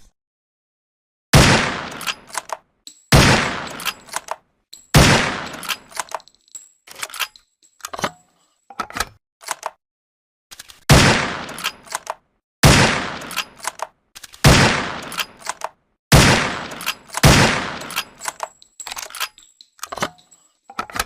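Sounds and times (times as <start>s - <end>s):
rifle shots with echo: 1.4s - 2.3s, 3.1s - 4.2s, 5.0s - 5.9s, 10.9s - 11.7s, 12.6s - 13.6s, 14.4s - 15.4s, 16.1s - 18.2s.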